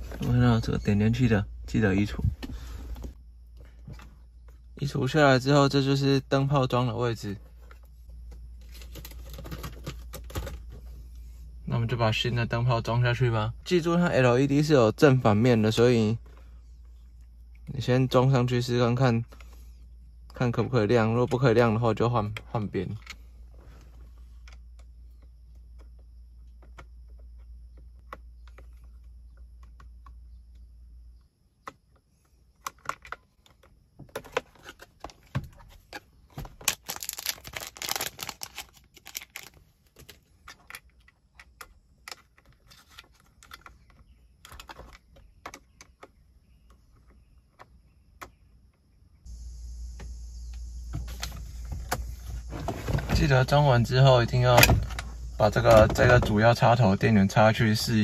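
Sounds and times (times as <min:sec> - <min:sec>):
clicks and rattles of handling: 0:07.5 - 0:10.9, 0:31.6 - 0:48.4
steady low hum: 0:47.9 - 0:58.0.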